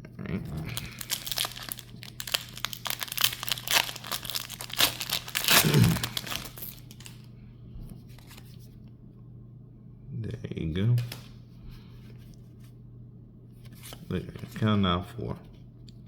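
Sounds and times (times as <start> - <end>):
foil wrapper tearing and crinkling: 0.6 - 7.2.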